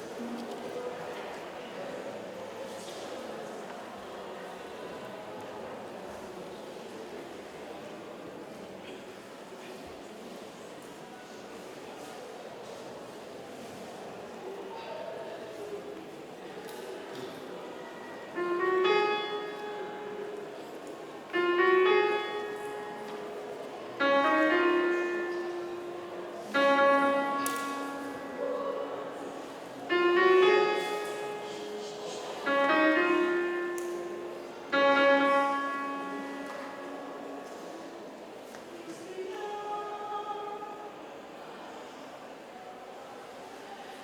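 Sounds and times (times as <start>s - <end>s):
piano chords ringing: 18.3s - 38.4s.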